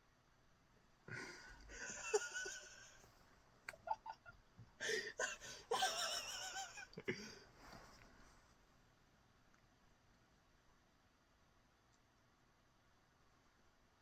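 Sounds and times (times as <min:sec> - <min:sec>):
person wheezing laughter: 0:01.1 - 0:03.0, 0:03.7 - 0:07.4.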